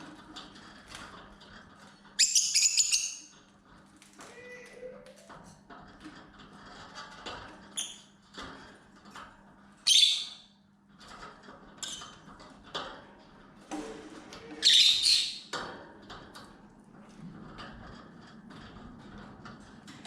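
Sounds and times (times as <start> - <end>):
lovebirds squawking and chirping: 14.6 - 15.5.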